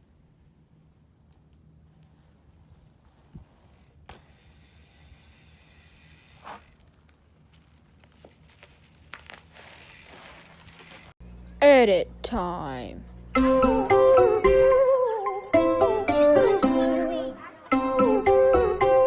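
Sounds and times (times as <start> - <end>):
bike tyre rolling on trail: 0.0 - 11.2
bike clicks: 0.6 - 11.2.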